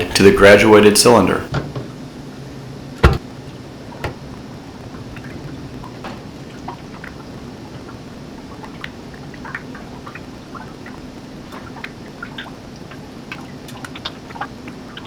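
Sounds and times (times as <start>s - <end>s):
steady low hum: 0.0s - 15.0s
bubbles plinking and popping: 3.9s - 15.0s.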